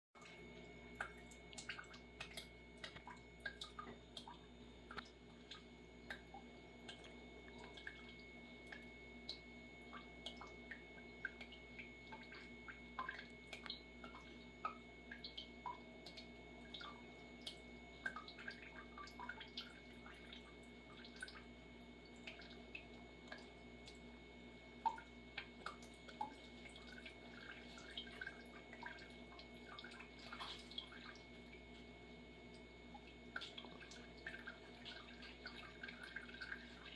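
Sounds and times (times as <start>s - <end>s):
tap dripping: 1.0s - 18.6s
cat lapping water: 24.8s - 36.9s.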